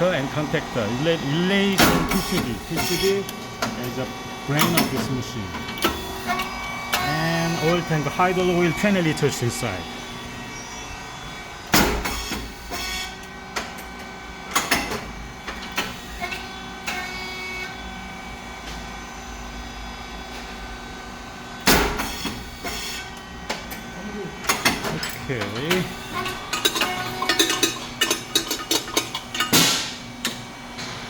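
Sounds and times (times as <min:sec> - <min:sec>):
machine motor and fan hum: 0:00.0 - 0:31.0
loud pop of puffing machine: 0:01.8 - 0:03.0, 0:11.7 - 0:12.9, 0:21.6 - 0:23.0, 0:29.5 - 0:30.0.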